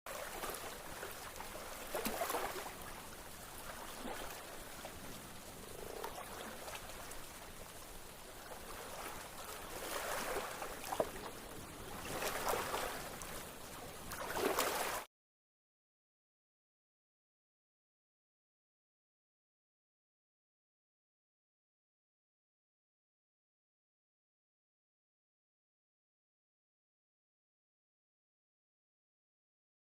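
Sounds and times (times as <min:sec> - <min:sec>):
running water rushing: 0:00.1 - 0:15.1.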